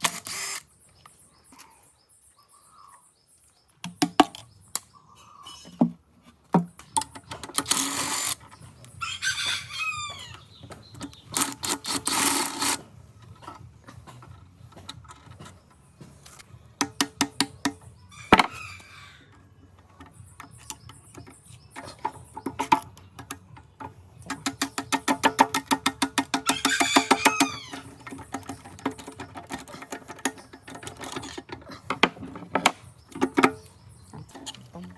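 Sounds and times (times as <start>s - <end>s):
rooster crowing: 9.0s - 10.4s, 18.1s - 19.3s, 26.4s - 27.9s
metal parts and tools clattering: 10.8s - 17.1s, 19.3s - 34.7s.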